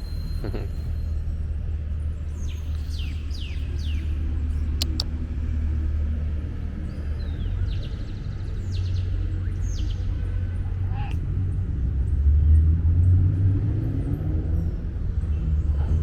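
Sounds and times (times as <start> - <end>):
city traffic rumble: 0.0 - 16.0
birds chirping: 2.4 - 5.0
sharp clicks: 4.8 - 5.1.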